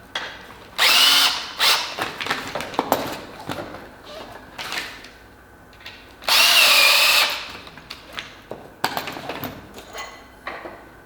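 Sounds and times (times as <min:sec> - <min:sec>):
power screwdriver whining: 0:00.8 - 0:01.9.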